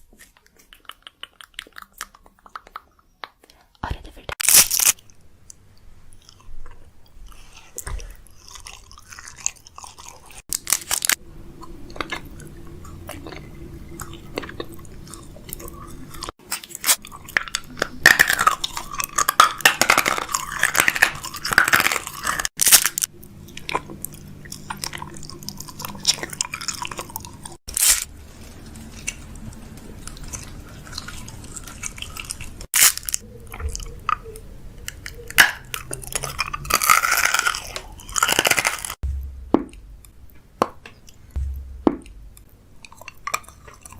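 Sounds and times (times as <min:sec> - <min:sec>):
packaging crinkling: 0:04.4 - 0:05.0, 0:10.4 - 0:11.2, 0:27.7 - 0:33.2.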